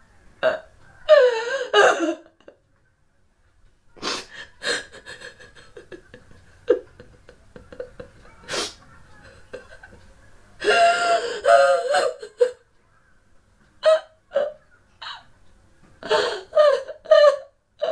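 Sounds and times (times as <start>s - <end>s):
woman sobbing: 0.4s - 2.6s, 4.0s - 12.6s, 13.8s - 15.3s, 16.0s - 17.9s.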